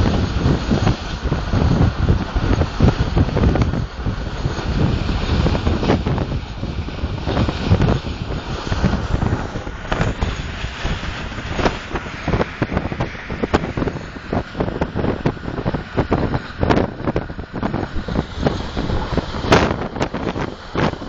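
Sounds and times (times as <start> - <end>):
train rumbling at speed: 0.0 - 21.0
wind noise on microphone: 0.0 - 21.0.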